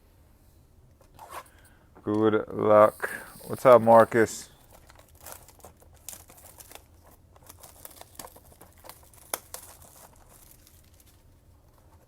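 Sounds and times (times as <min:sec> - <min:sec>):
plastic shrink-wrap crinkling: 0:02.8 - 0:12.0.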